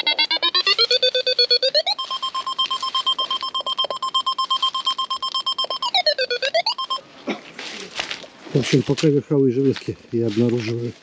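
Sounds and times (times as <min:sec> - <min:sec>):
metal detector pulsing tone: 0:00.0 - 0:07.1.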